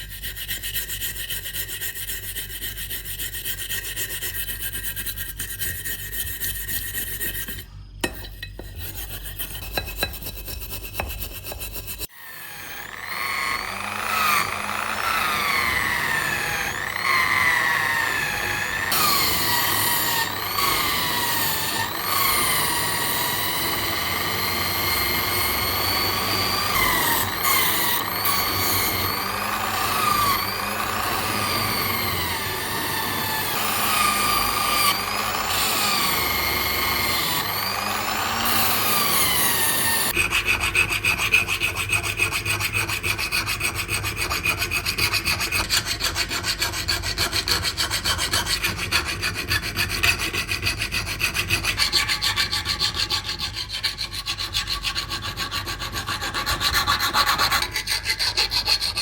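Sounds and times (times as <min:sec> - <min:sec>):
filing or sanding strokes: 0:00.0 - 0:59.0
grinder whine: 0:06.0 - 0:41.1.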